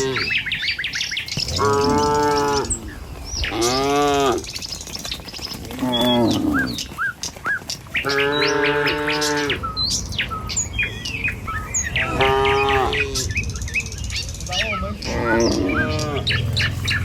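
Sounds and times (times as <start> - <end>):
cow mooing: 0.0 - 0.4, 1.4 - 4.5, 5.8 - 6.8, 8.1 - 9.8, 11.9 - 13.3, 15.0 - 17.0
small birds chirping: 0.0 - 17.0.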